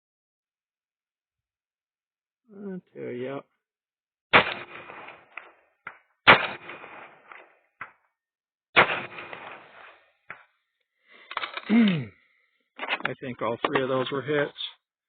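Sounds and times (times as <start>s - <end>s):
rifle shots with echo: 4.3s - 5.6s, 6.2s - 7.9s, 8.8s - 10.0s.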